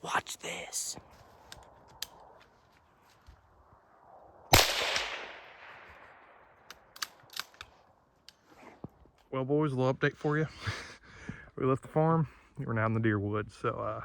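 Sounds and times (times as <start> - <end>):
gunshot with echo: 4.5 - 6.2.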